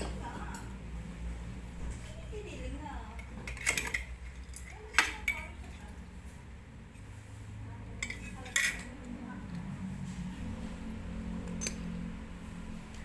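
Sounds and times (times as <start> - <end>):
metal clinking and tapping: 11.4 - 12.0.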